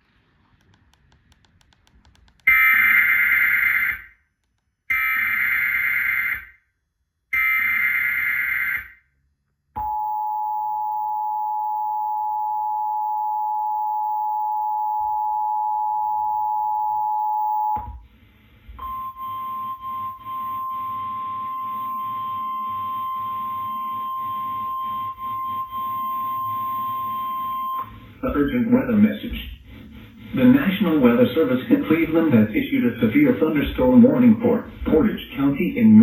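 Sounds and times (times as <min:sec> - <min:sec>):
two-tone attention signal: 0:18.8 - 0:27.9.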